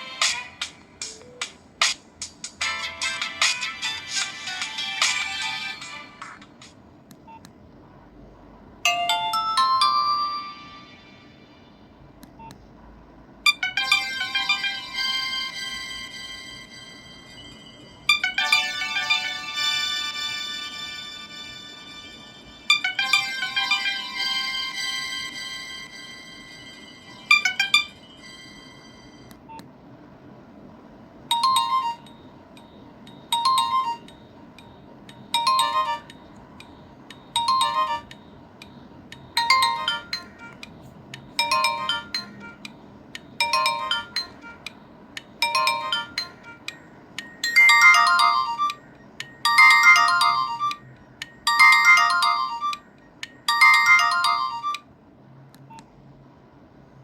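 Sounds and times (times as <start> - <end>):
phone ringtone beeping notes: 8.9 - 11.3, 13.5 - 17.3, 18.0 - 22.0, 22.6 - 29.2, 31.3 - 54.9.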